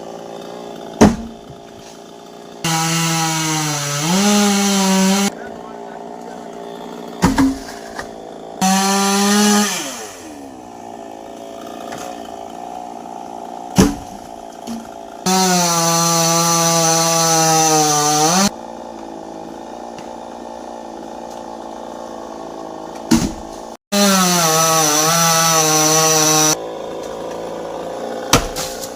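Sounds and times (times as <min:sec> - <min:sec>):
chainsaw revving: 0:00.0 - 0:28.9
sharp knocks: 0:01.0 - 0:01.6, 0:07.2 - 0:08.1.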